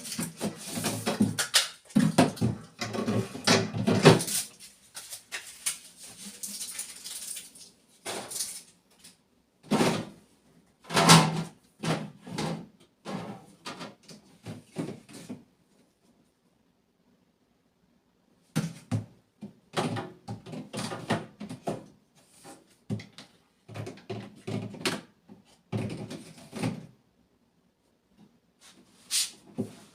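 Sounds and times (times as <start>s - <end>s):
refrigerator parts knocking and rattling: 0.0s - 4.5s, 9.6s - 10.2s, 10.8s - 15.4s, 18.6s - 22.0s, 22.9s - 27.0s.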